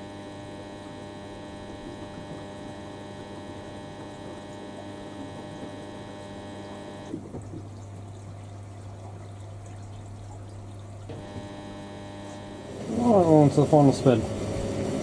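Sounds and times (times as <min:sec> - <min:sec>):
drain pump humming: 0:00.0 - 0:15.0.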